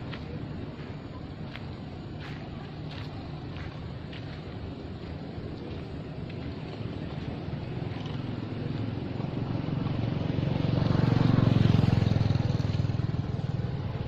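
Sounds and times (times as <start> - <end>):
vehicle engine passing by: 6.4 - 14.0.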